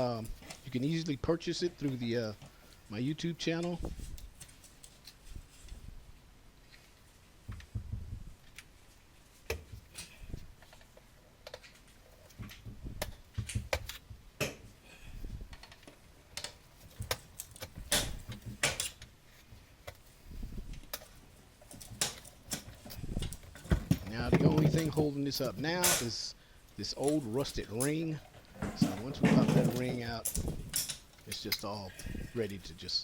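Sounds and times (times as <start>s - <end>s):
handling thumps: 16.4s - 26.2s.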